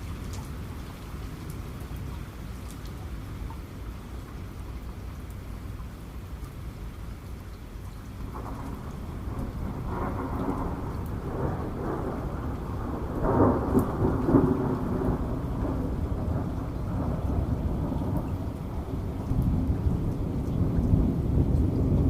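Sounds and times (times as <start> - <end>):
rain falling: 0.0 - 22.0
thunder rolling: 8.3 - 22.0.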